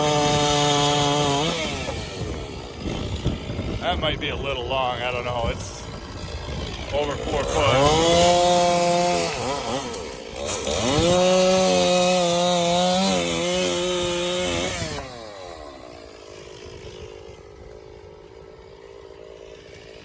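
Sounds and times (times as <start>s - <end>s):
chainsaw cutting log: 0.0s - 20.0s.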